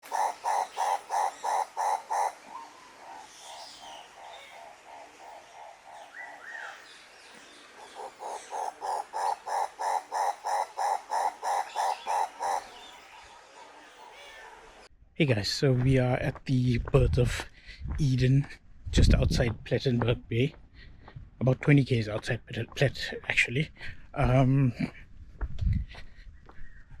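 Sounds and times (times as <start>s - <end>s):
animal calling in pulsed notes: 0.0s - 6.8s, 7.8s - 13.0s.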